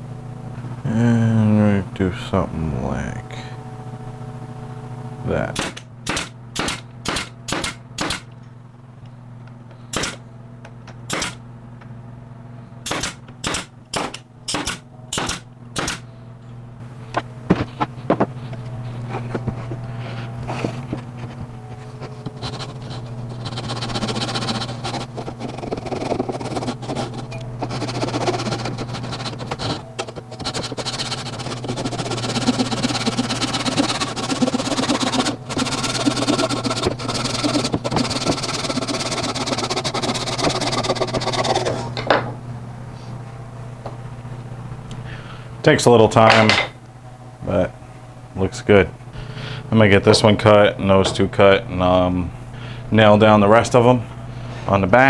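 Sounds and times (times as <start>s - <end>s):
machine running: 3.4s - 11.6s, 12.7s - 42.0s
pneumatic nailer firing: 5.6s - 8.4s, 9.9s - 10.3s, 11.0s - 11.4s, 12.8s - 16.1s, 23.6s - 41.8s.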